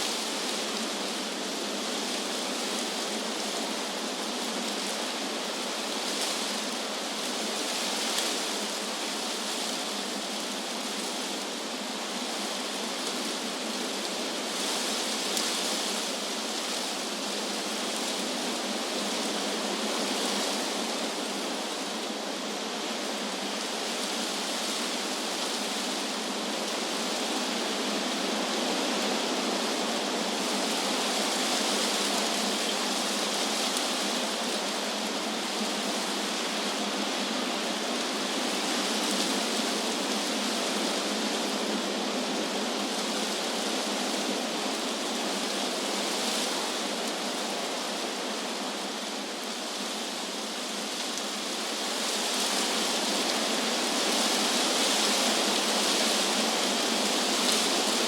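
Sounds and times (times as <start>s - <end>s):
wind blowing through trees: 0.0s - 58.0s.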